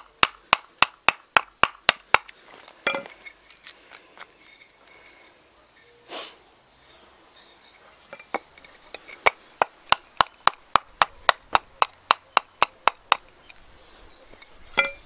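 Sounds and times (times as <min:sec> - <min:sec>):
axe chopping wood: 0:00.0 - 0:03.0, 0:09.2 - 0:13.3.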